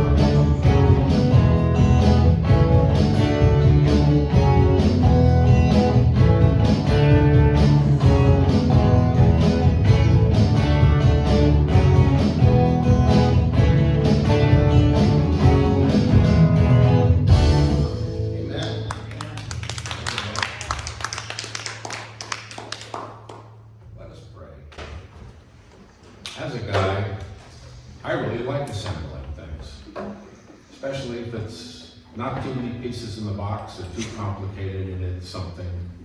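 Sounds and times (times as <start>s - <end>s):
strummed guitar: 0.0s - 18.9s
worship band music: 0.0s - 19.5s.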